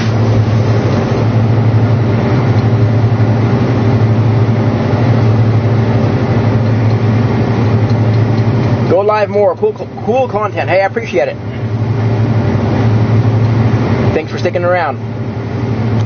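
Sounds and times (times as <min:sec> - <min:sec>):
tractor diesel engine droning: 0:00.0 - 0:16.0.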